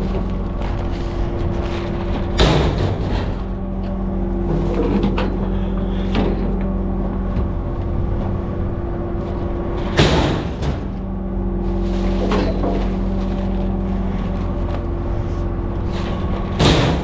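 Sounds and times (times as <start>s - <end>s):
engine running steadily: 0.0s - 17.0s
metal clunks and knocks: 2.2s - 7.9s.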